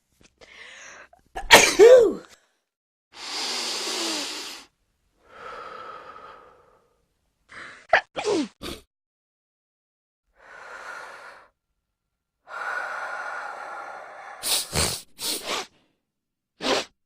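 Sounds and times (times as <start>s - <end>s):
person breathing in noisily: 3.2s - 7.9s, 10.4s - 11.6s, 12.4s - 15.8s.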